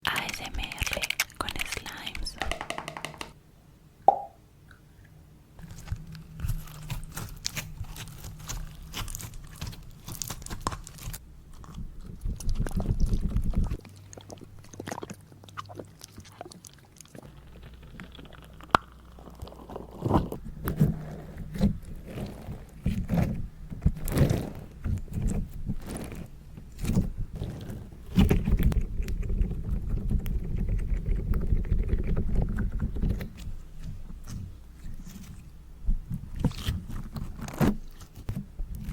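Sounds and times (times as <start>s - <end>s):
small popping clicks: 0.0s - 3.4s
slime squelching: 5.6s - 38.9s.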